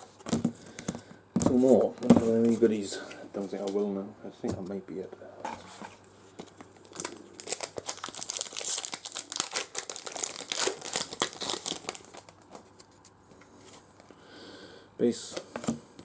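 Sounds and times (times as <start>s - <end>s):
wrapper tearing and crinkling: 6.8s - 12.9s.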